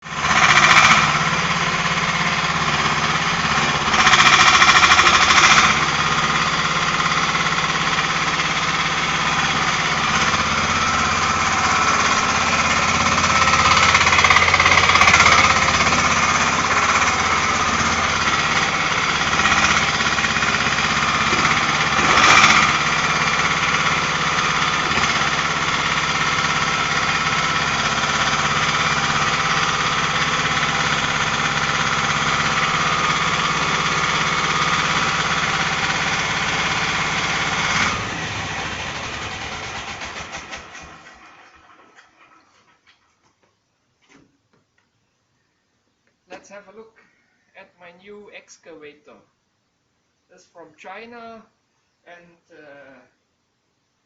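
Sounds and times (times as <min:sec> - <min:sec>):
mini excavator engine running: 0:00.0 - 0:43.3.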